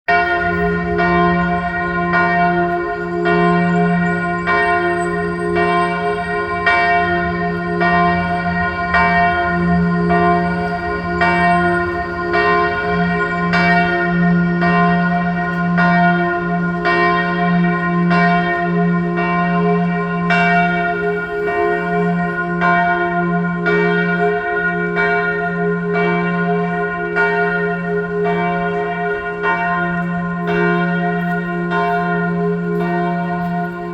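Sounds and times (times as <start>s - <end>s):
bell tolling: 0.1s - 18.5s.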